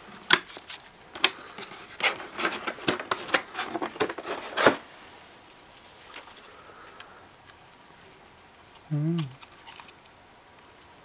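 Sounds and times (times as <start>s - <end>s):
plastic packaging clicks and rustles: 0.2s - 4.9s, 8.7s - 10.2s.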